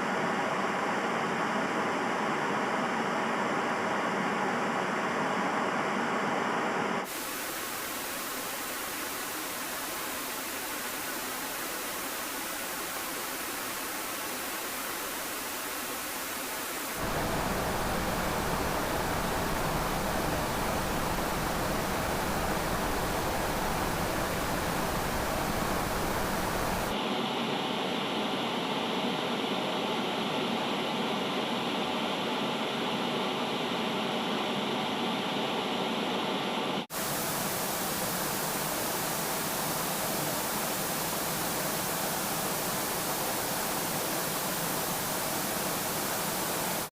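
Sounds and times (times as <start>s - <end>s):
television static hiss: 7.1s - 26.9s, 37.0s - 46.9s.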